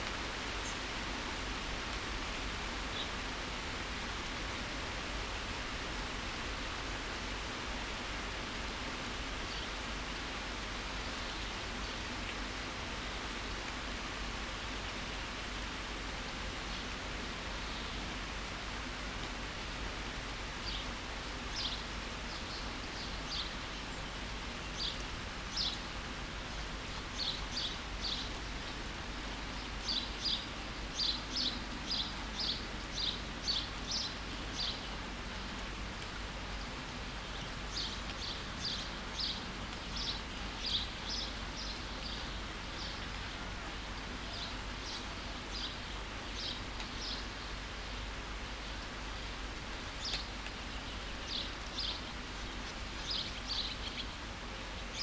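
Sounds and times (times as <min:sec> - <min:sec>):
steady rain hiss: 0:00.0 - 0:55.0
songbird chirping: 0:29.4 - 0:35.0, 0:36.6 - 0:55.0.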